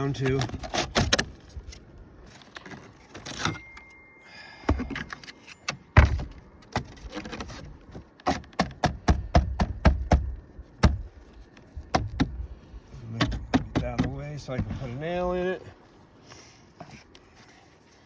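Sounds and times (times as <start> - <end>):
roof shingles knocking and cracking: 6.0 - 12.5, 13.1 - 14.8.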